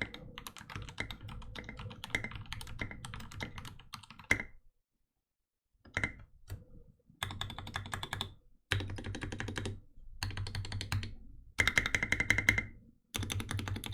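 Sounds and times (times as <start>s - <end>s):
typing on mechanical keyboard: 0.0s - 4.5s, 7.2s - 12.6s, 13.2s - 13.9s.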